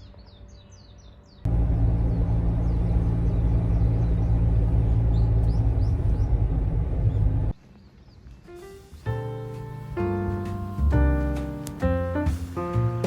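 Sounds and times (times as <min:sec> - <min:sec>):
birds chirping faintly: 0:00.0 - 0:10.4
steady low rumble: 0:01.5 - 0:07.6.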